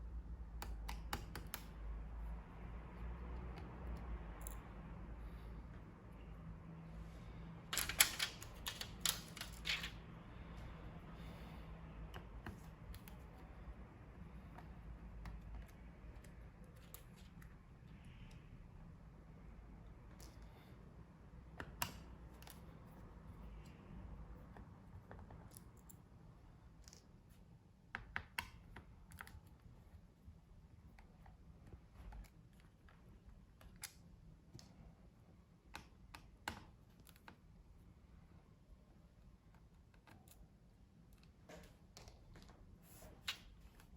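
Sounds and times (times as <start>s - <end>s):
light clicks and taps of tools: 0.6s - 2.0s, 3.0s - 4.9s, 14.3s - 18.5s.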